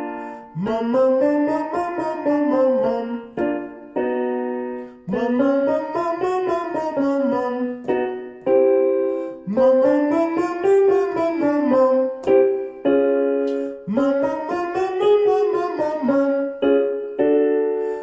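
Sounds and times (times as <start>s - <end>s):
piano pattern and chords: 0.0s - 18.0s
person singing a scale: 0.2s - 4.0s, 4.9s - 17.3s.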